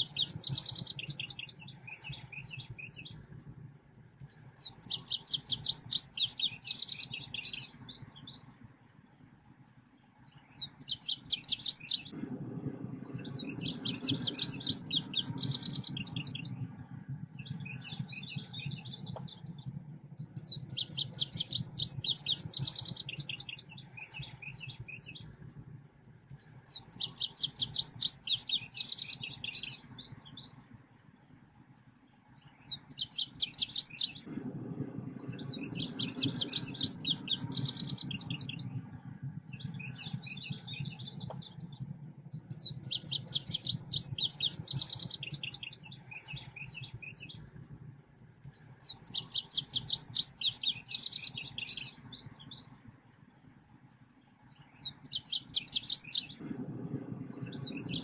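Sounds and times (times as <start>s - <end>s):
bird chirping trills: 0.0s - 3.4s, 4.2s - 8.9s, 9.9s - 25.7s, 26.3s - 31.4s, 32.1s - 58.0s
steady low hum: 12.1s - 26.9s, 34.2s - 49.1s, 56.3s - 58.0s.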